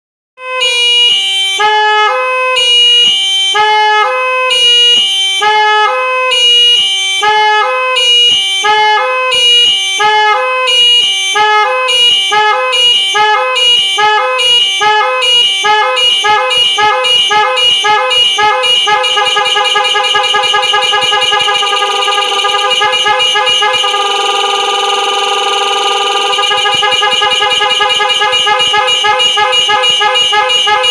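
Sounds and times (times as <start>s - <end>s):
tuned electric horns stepped tune: 12.0s - 30.9s.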